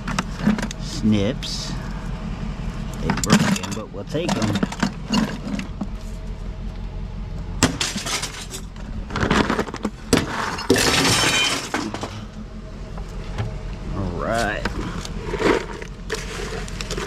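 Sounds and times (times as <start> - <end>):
junk clattering: 0.0 - 1.0, 2.8 - 6.3, 7.4 - 13.8
glass shattering: 7.6 - 8.7, 10.2 - 12.2.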